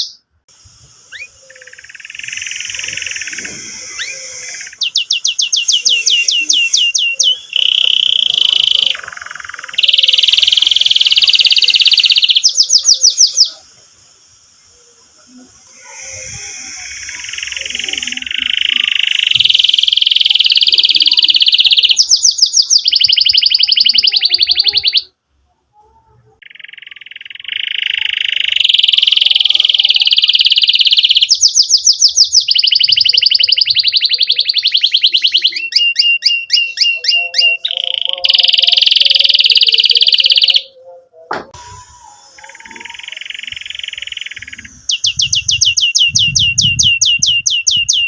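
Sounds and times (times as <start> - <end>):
canary singing trills: 0.0 - 0.4, 1.0 - 48.0.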